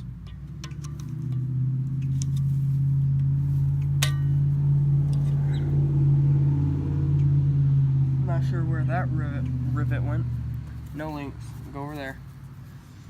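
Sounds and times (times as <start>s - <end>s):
low mechanical hum: 0.0s - 13.0s
metallic clink: 3.9s - 4.4s.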